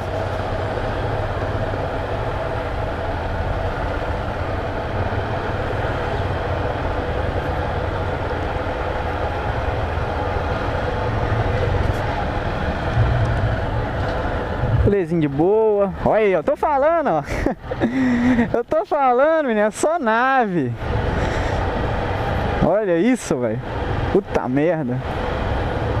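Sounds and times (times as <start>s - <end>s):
wind rush on microphone: 0.0s - 15.0s
motorcycle engine cruising: 0.0s - 17.0s.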